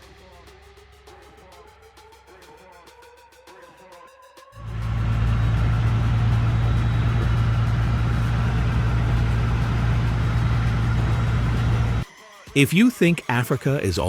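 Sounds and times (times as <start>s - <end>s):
vehicle engine drone: 4.6s - 12.0s
road noise: 4.7s - 12.0s.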